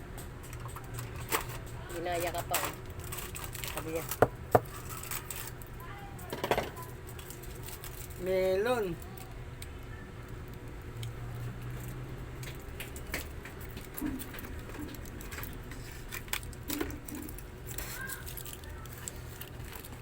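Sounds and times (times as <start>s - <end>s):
packaging rustling: 2.2s - 5.7s.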